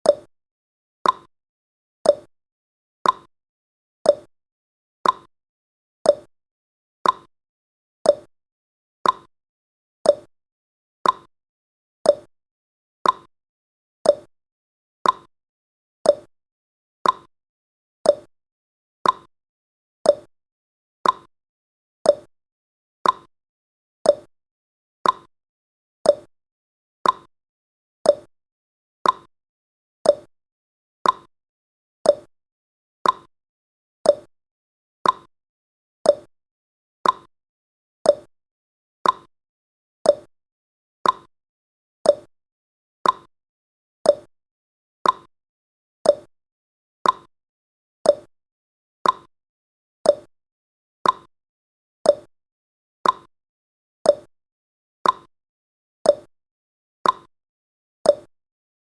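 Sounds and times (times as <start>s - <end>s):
clock ticking: 33.0s - 33.3s, 41.0s - 41.3s, 47.0s - 47.3s, 49.0s - 49.3s.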